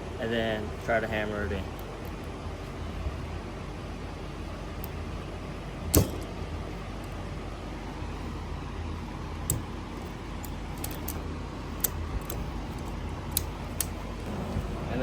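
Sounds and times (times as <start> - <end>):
electric fan humming: 0.0 - 15.0
ratchet strap clicking: 9.4 - 11.2, 11.8 - 14.1.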